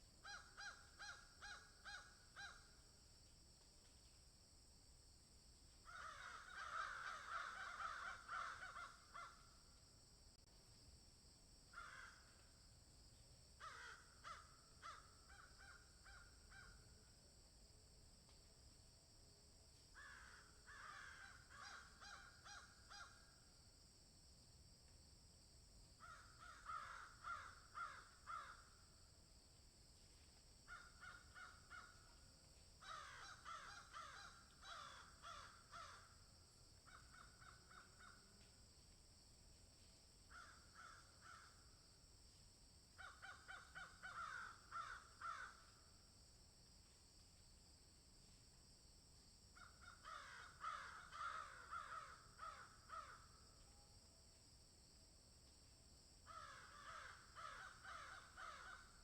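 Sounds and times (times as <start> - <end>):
crows cawing: 0.2 - 2.7, 5.8 - 9.5, 11.7 - 12.4, 13.6 - 16.8, 20.0 - 23.3, 26.0 - 28.8, 30.7 - 32.1, 32.8 - 36.2, 36.9 - 38.2, 40.3 - 41.6, 43.0 - 45.8, 49.6 - 53.3, 56.3 - 59.0.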